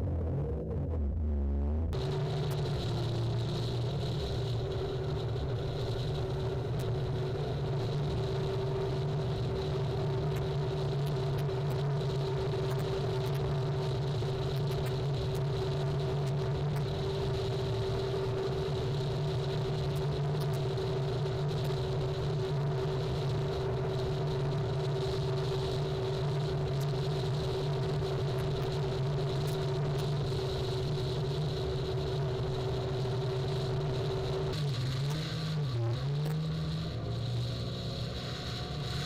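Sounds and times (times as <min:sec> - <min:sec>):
jet ski engine running: 0:20.6 - 0:35.8, 0:36.4 - 0:39.0.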